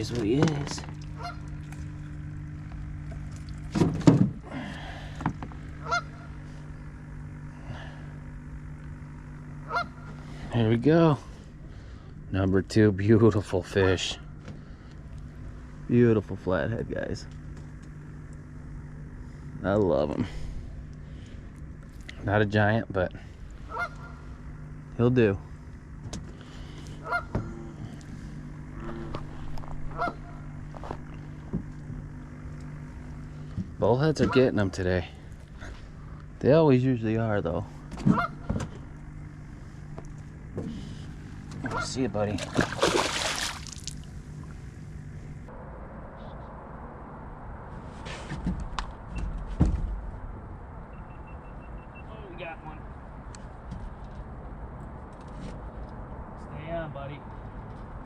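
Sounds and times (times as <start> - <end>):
low hum: 0.0 - 58.0
honking bird calls: 1.1 - 1.6, 5.8 - 6.6, 9.6 - 10.4, 23.6 - 24.5, 26.6 - 27.6, 28.2 - 30.7, 38.0 - 38.6.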